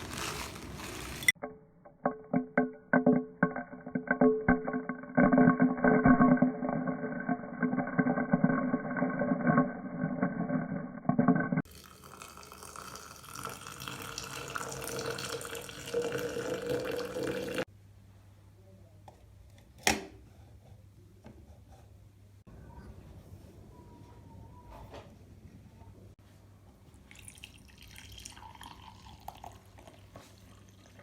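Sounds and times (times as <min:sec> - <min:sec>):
water running into sink: 0:11.6 - 0:17.7.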